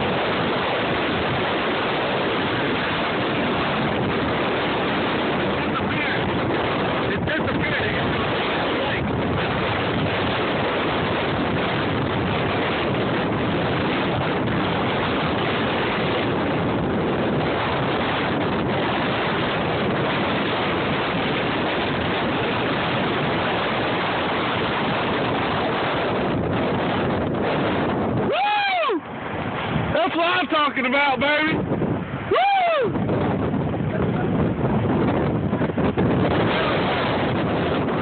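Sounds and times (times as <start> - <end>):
storm wind rushing over microphone: 0.0 - 38.0.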